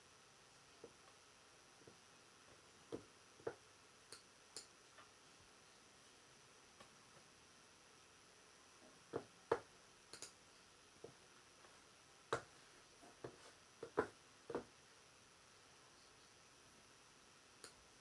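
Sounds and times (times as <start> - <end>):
mouse clicks: 10.1 - 10.4.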